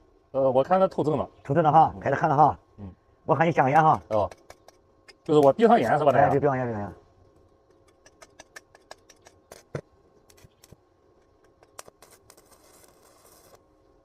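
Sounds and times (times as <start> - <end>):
welding arc crackling and spitting: 7.8 - 13.7.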